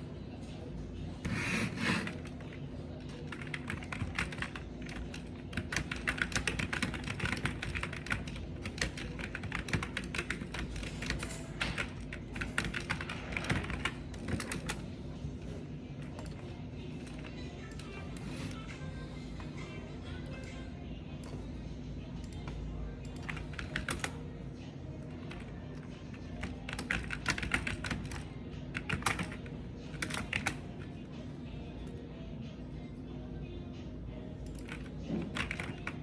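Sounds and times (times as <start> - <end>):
keyboard typing: 1.2 - 18.7, 23.0 - 24.2, 25.2 - 30.9, 34.4 - 36.0.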